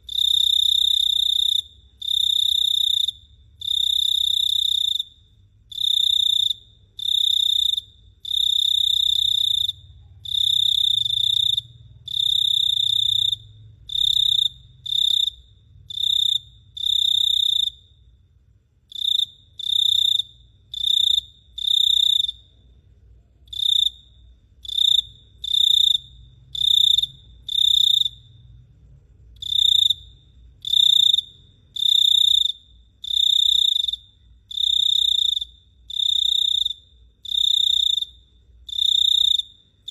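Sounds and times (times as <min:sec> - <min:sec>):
cricket chirping: 0:00.0 - 0:39.9.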